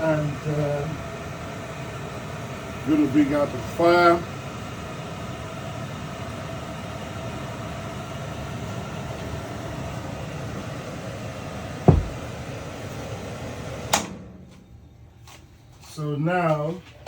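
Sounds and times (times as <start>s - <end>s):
heavy thump: 11.9s - 12.3s
machine hum with whine: 11.9s - 12.3s.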